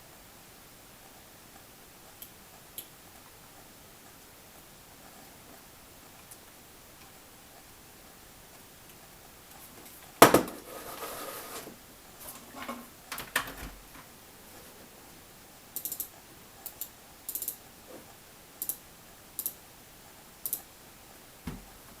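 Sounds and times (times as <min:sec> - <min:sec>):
computer mouse clicks: 0:15.8 - 0:17.6, 0:18.6 - 0:18.8, 0:19.4 - 0:19.6, 0:20.4 - 0:20.7.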